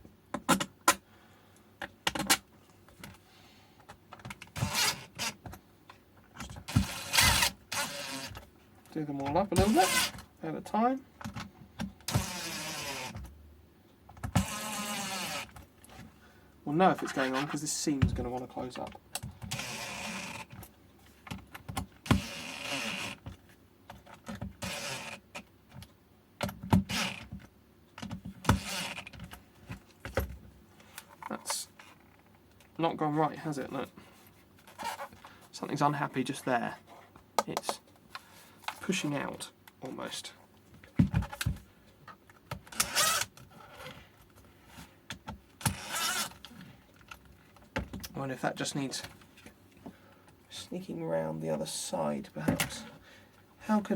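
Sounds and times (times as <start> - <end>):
electric screwdriver whirring: 6.7 - 8.4, 9.6 - 10.2, 12.1 - 13.2, 14.4 - 15.5, 19.5 - 20.4, 22.1 - 23.2, 24.6 - 25.2, 26.9 - 27.2, 28.5 - 29.1, 42.8 - 43.3, 45.6 - 46.4.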